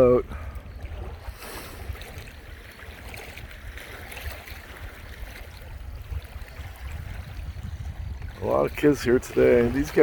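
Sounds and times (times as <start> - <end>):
wind rumbling on microphone: 0.0 - 10.0
wash of water: 8.3 - 10.0.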